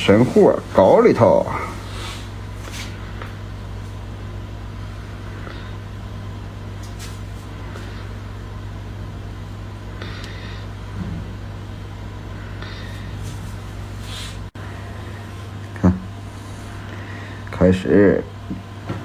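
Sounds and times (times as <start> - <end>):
low electric hum: 0.0 - 19.0.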